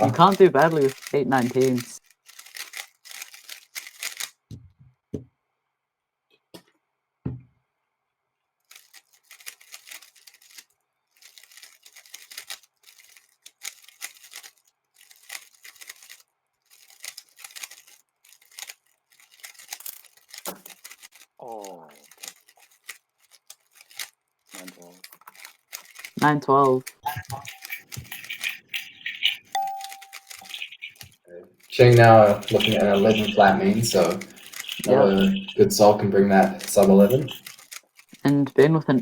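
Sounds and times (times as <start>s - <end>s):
puzzle cube clicking turns: 0.0s - 4.5s, 8.7s - 21.4s, 22.0s - 38.4s
knocks: 6.6s - 7.5s.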